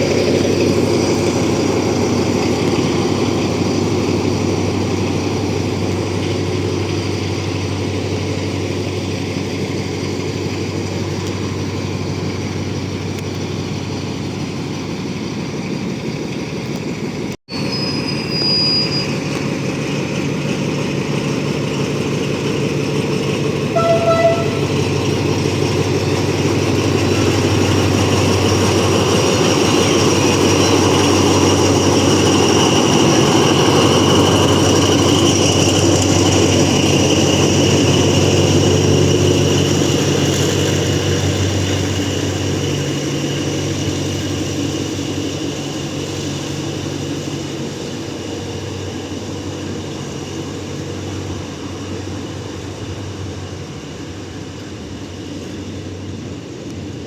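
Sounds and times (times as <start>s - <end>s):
locomotive engine humming: 0.0s - 57.0s
train wheels rolling: 0.0s - 57.0s
train horn blast: 23.7s - 25.2s.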